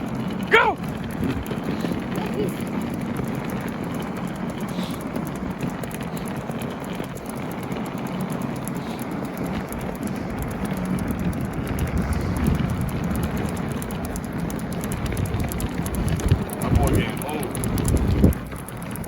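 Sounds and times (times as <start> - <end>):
skate wheels rolling on pavement: 0.0 - 19.0
wind buffeting microphone: 0.0 - 19.0.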